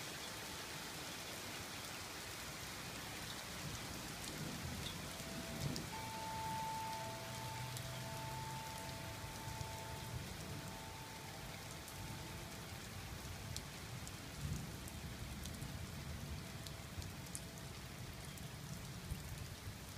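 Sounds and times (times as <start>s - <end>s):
rain shower: 0.0s - 19.9s
raindrop ticks: 3.3s - 19.9s
faint steady tones: 4.4s - 14.7s.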